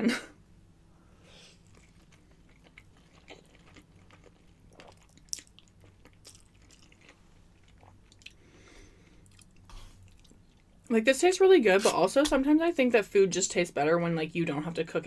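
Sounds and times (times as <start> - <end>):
chewing with wet mouth clicks: 1.6 - 8.4, 9.2 - 10.8.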